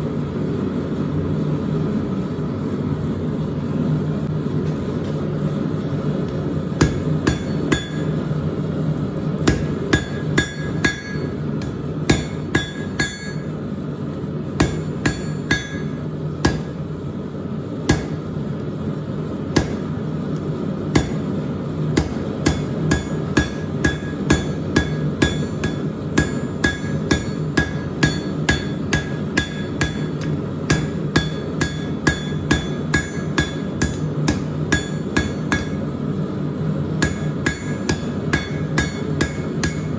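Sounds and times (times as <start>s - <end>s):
hammer striking steel on anvil: 6.8s - 8.2s, 9.4s - 13.6s, 14.6s - 16.9s, 17.9s - 18.4s, 19.6s - 20.0s, 20.9s - 21.4s, 22.0s - 35.9s, 37.0s - 39.9s.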